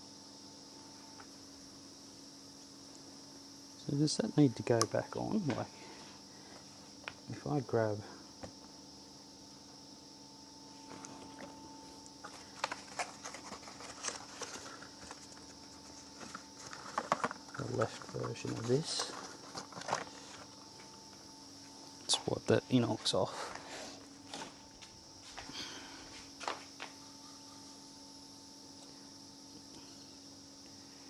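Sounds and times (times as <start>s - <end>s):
faint high-pitched hiss: 0.0s - 13.1s
high insect drone: 0.0s - 31.0s.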